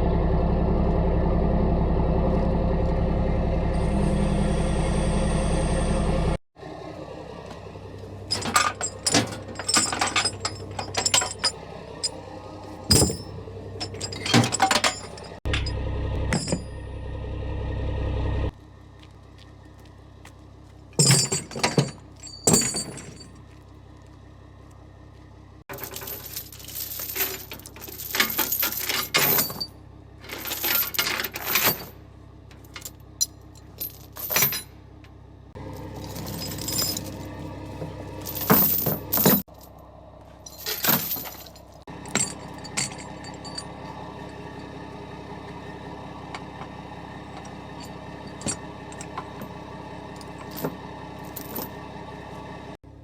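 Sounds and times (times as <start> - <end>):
diesel engine idling: 0.0 - 21.0, 23.3 - 28.7, 29.6 - 30.9, 31.8 - 53.0
metal clanks and chain rattles: 7.4 - 16.8, 21.0 - 23.5, 25.7 - 45.6, 46.2 - 51.8.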